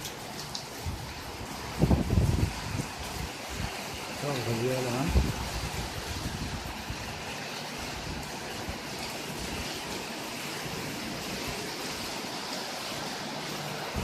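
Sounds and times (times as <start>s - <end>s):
wind and rain rushing: 0.0s - 14.0s
wind buffeting microphone: 0.8s - 4.2s, 5.0s - 9.9s.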